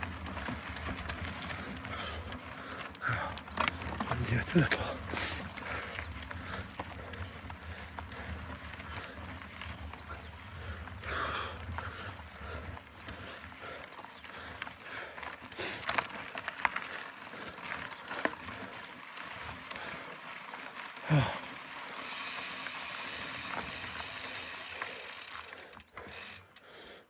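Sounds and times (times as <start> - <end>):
bike knocks and rattles: 0.0 - 14.5
bike freehub ratchet clicking: 21.9 - 26.7.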